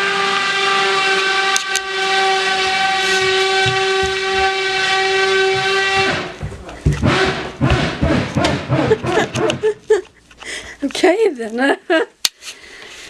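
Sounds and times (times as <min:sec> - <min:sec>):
whistle-like drone from shower: 0:00.0 - 0:06.2.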